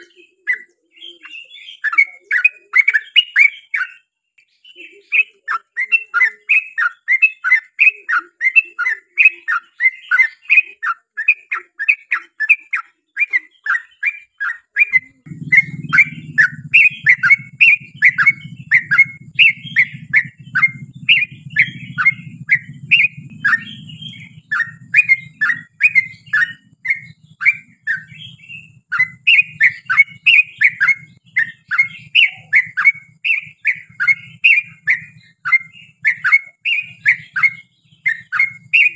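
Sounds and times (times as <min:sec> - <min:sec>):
bulbul singing: 0:00.0 - 0:38.9
low steady hum: 0:15.2 - 0:33.2.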